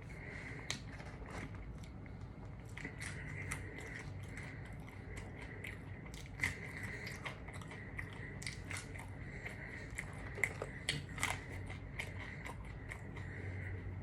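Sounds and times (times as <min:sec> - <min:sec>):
person biting and chewing: 0:02.6 - 0:13.7.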